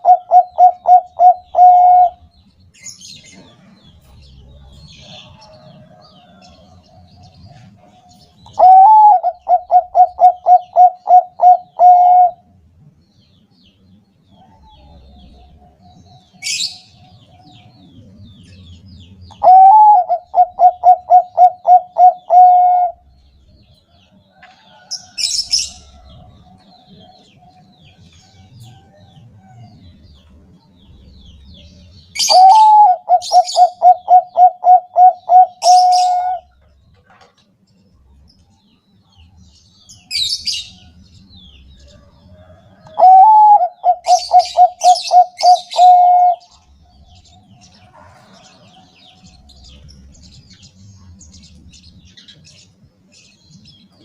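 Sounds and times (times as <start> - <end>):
dove cooing: 0.0 - 2.3, 7.5 - 12.5, 19.3 - 23.3, 32.2 - 36.7, 42.4 - 46.7
small birds chirping: 0.0 - 54.0.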